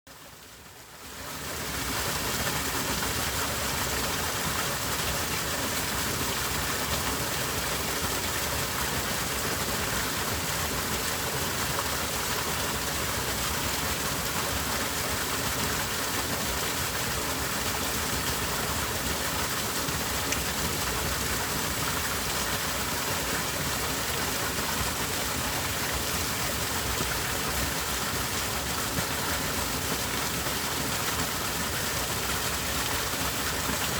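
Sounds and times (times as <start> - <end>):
stream flowing: 0.1 - 33.9.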